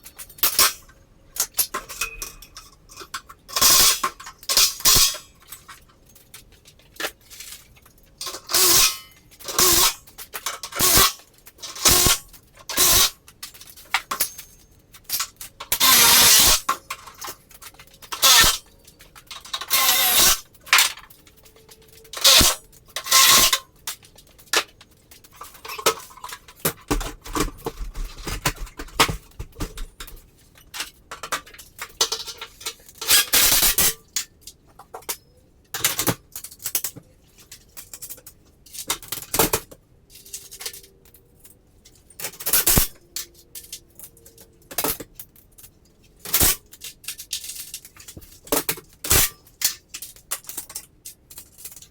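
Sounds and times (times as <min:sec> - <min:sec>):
metallic clinks and knocks: 0:00.0 - 0:06.3.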